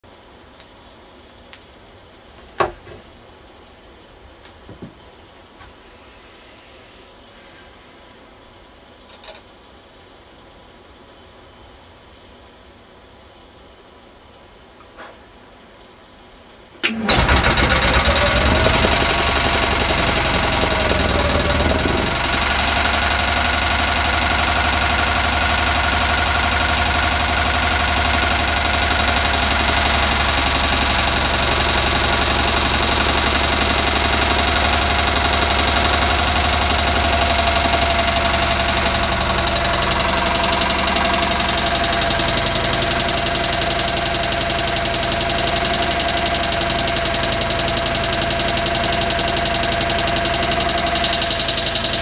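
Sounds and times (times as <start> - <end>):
engine running with tapping: 16.8 - 52.0.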